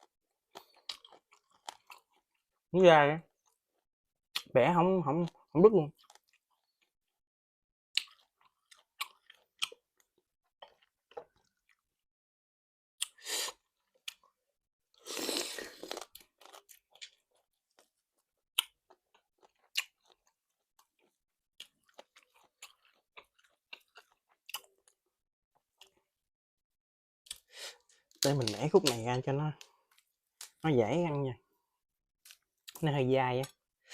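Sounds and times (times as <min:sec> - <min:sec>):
chewing with wet mouth clicks: 0:00.5 - 0:02.4, 0:07.9 - 0:11.8, 0:18.6 - 0:21.0, 0:21.6 - 0:25.0.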